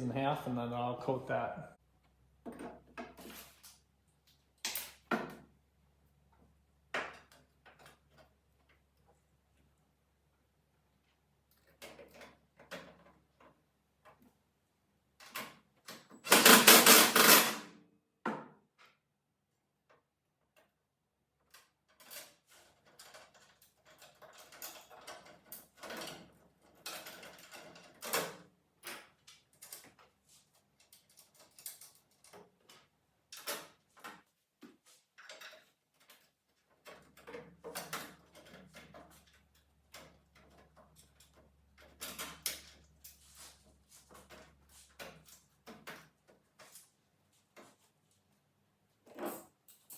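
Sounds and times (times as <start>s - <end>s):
tools and metal parts clattering: 2.4s - 5.5s, 7.0s - 8.8s, 11.5s - 14.3s, 15.2s - 17.8s, 21.5s - 34.3s, 34.9s - 47.9s, 49.0s - 49.9s.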